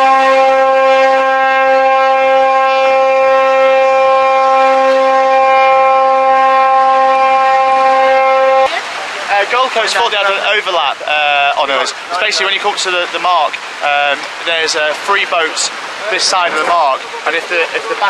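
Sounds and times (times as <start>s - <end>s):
horn long blast: 0.0s - 8.8s.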